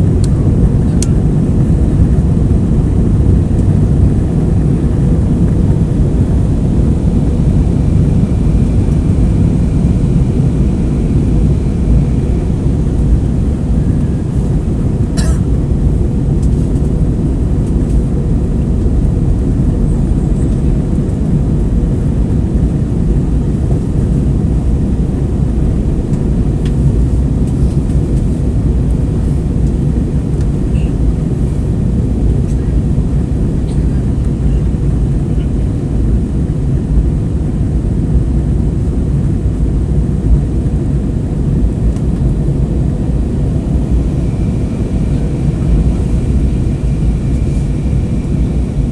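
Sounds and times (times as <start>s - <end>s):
airliner cabin engine rumble: 0.0s - 48.9s.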